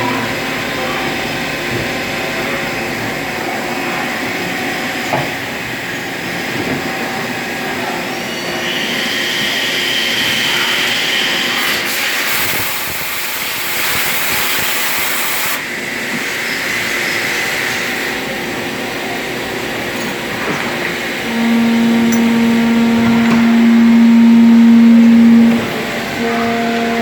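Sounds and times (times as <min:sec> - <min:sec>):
cnc machine drone: 0:00.0 - 0:11.9, 0:20.9 - 0:27.0
high machine whine: 0:16.4 - 0:27.0.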